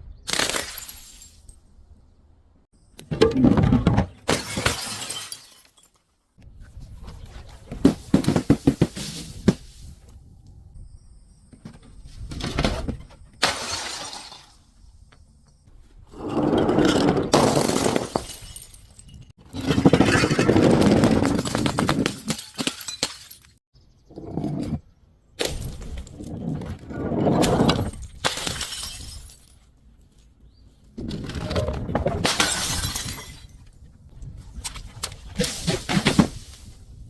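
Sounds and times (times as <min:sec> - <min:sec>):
glass bottles crushing and shattering: 0:00.3 - 0:01.6, 0:03.2 - 0:06.1, 0:11.6 - 0:15.6, 0:16.2 - 0:23.6, 0:27.3 - 0:29.7, 0:31.3 - 0:33.7.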